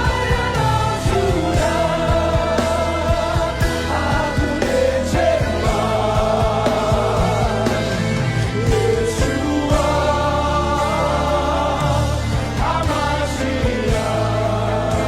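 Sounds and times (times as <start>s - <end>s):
band with steady drumbeat: 0.0s - 15.0s
voices singing long notes: 0.0s - 15.0s.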